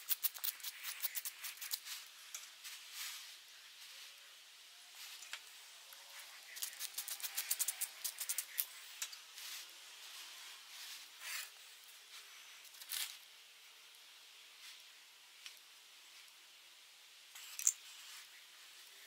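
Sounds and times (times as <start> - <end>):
short hissing bursts: 0.0 - 2.1, 6.1 - 8.8.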